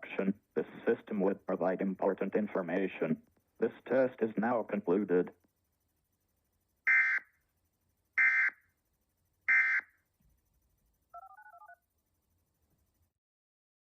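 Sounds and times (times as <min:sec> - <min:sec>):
warbling digital data tones: 0:11.1 - 0:11.8
faint fluttering two-tone beep: 0:11.1 - 0:11.9.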